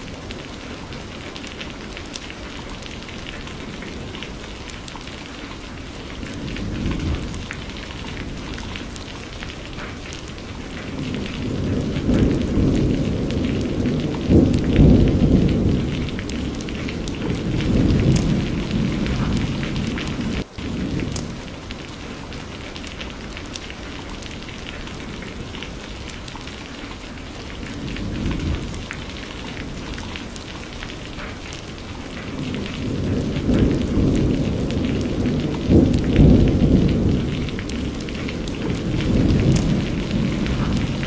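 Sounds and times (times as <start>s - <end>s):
rolling thunder rumble: 0.0s - 41.0s
steady rain falling: 0.0s - 41.0s.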